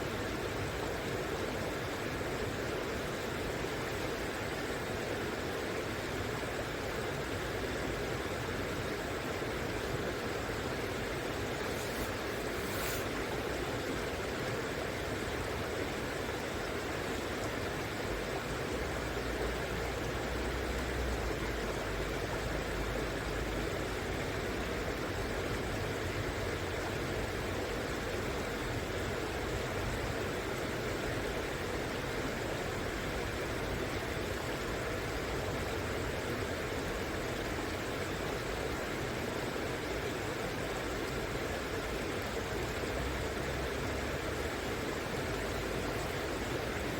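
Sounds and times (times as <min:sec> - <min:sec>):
river water rushing: 0:09.8 - 0:14.5, 0:40.2 - 0:46.9.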